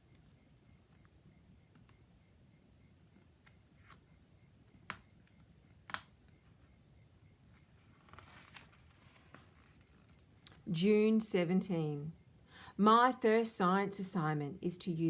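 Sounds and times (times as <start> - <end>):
soft rustle: 7.5 - 10.7.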